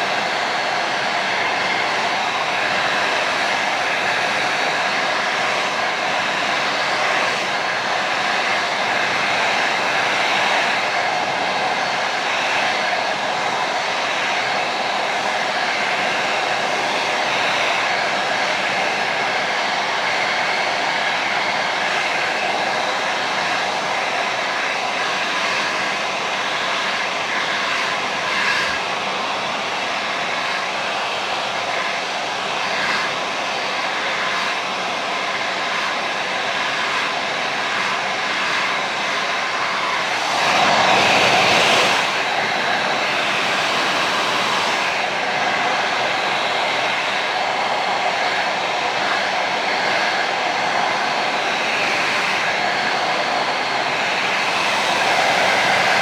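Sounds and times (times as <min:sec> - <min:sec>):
hair dryer blowing: 0:00.0 - 0:56.0.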